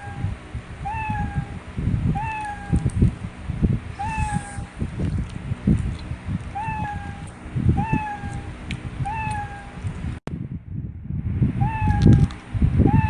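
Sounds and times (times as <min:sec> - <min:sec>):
cat meowing: 0:00.9 - 0:02.9, 0:04.0 - 0:04.7, 0:06.5 - 0:09.8, 0:11.6 - 0:12.3
chewing and crunching: 0:04.3 - 0:06.6, 0:11.9 - 0:12.4.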